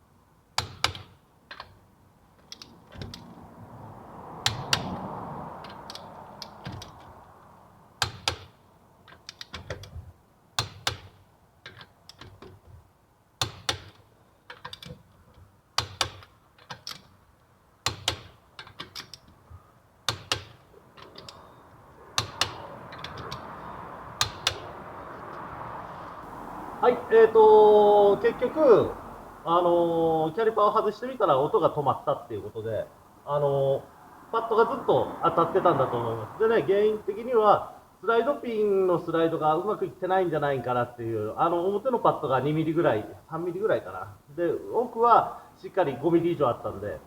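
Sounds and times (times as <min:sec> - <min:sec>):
soft rush of noise: 0:01.9 - 0:09.1, 0:19.3 - 0:47.0
metallic clicks of hand tools: 0:13.4 - 0:17.2, 0:17.8 - 0:19.3.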